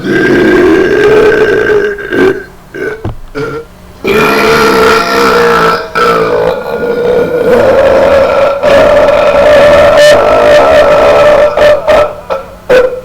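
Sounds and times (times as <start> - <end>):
loud belching: 0.0 - 13.0.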